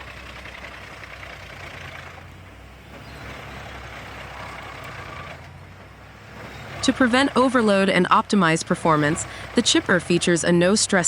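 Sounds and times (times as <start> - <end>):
wood chipper grinding material: 0.0 - 7.6
wood chipper engine hum: 0.0 - 11.0.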